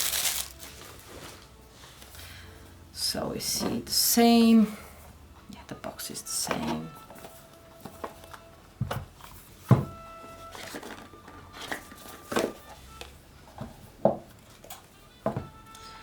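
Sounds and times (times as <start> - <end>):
quiet background music: 0.0 - 16.0
cardboard box knocks and taps: 9.7 - 10.0.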